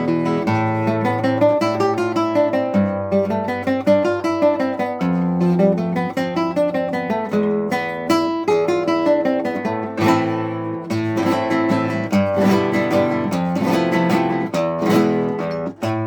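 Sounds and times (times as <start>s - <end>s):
acoustic guitar playing: 0.0s - 16.0s.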